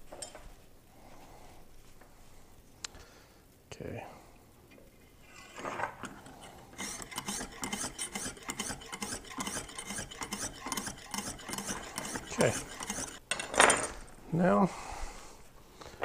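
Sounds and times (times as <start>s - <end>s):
honing stone scraping knife edge: 6.2s - 13.2s.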